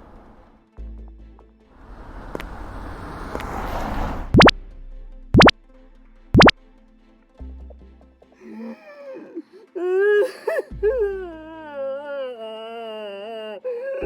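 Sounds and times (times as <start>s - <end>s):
light background music: 0.5s - 1.8s, 4.5s - 14.0s
wailing cry sound effect: 8.5s - 14.0s.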